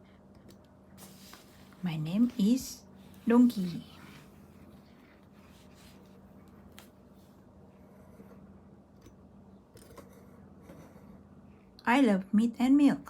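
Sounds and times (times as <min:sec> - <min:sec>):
low steady hum: 0:00.0 - 0:13.0
book page turning: 0:01.0 - 0:02.4.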